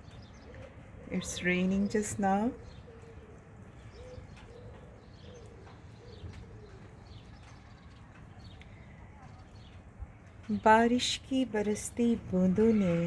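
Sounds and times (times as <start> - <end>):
faint drips: 0.0 - 13.0
light rain falling: 0.0 - 13.0
dove cooing: 2.6 - 7.0.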